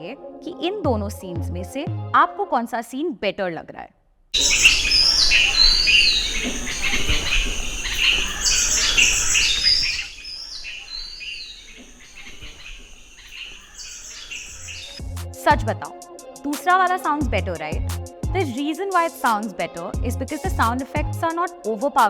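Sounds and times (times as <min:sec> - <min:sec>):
birds chirping: 0:04.4 - 0:15.8.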